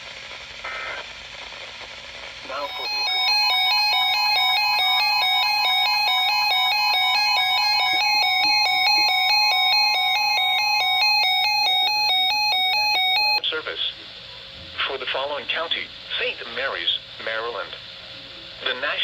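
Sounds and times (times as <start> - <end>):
electronic beeping tune: 2.6 - 13.4.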